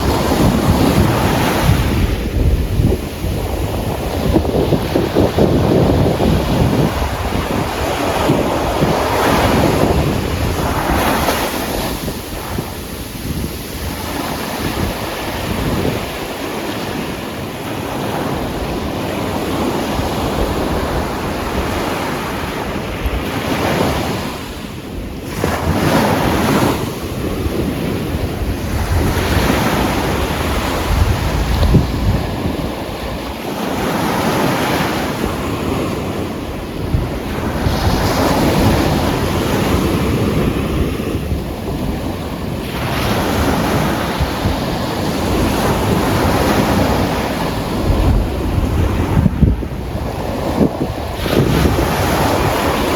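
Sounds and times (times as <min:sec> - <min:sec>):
surf breaking on beach: 0:00.0 - 0:52.9
wind rumbling on microphone: 0:00.0 - 0:52.9.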